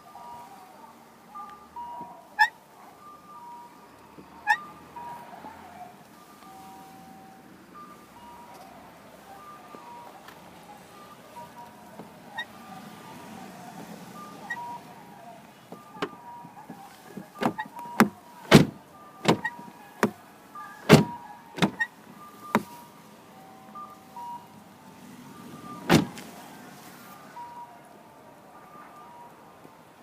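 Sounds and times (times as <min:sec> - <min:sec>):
car door hinge clicks and clunks: 0:15.7 - 0:20.2, 0:20.8 - 0:22.7, 0:25.8 - 0:26.2
door check squeaks: 0:17.3 - 0:22.8.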